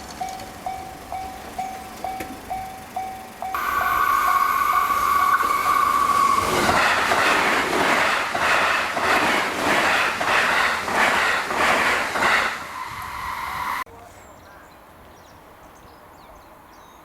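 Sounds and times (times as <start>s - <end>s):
wheels clattering over rail joints: 0.0s - 13.1s
level crossing bell dinging: 0.2s - 5.5s
train rushing past: 0.2s - 13.9s
train horn: 3.6s - 6.8s.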